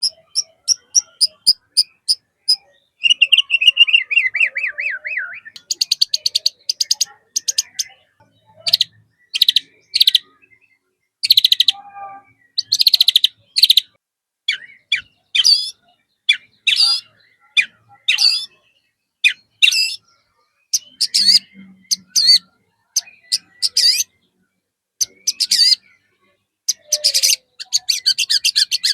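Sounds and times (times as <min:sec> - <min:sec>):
songbird singing: 0:00.0 - 0:28.9.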